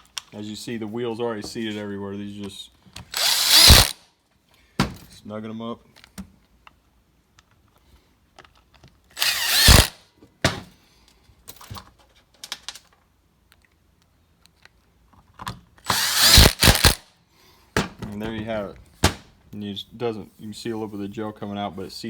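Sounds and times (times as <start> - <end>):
power drill driving screws: 3.0 - 4.0, 9.2 - 10.0, 15.8 - 17.0.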